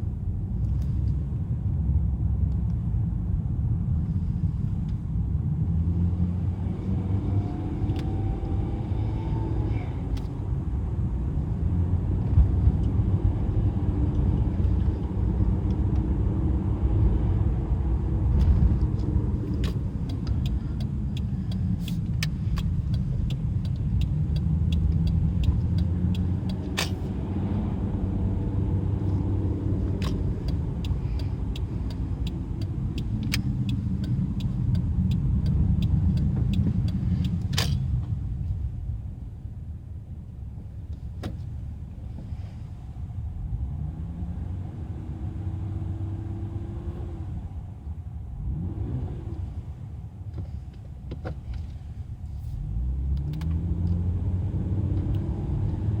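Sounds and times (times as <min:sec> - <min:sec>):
car engine running: 0:09.9 - 0:41.4
sharp clicks: 0:18.3 - 0:27.1, 0:29.8 - 0:38.2.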